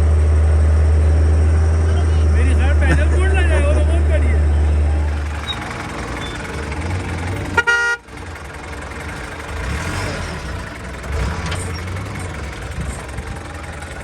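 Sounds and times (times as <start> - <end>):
engines rumbling: 0.0 - 14.0
vehicle horn honk: 7.3 - 8.2.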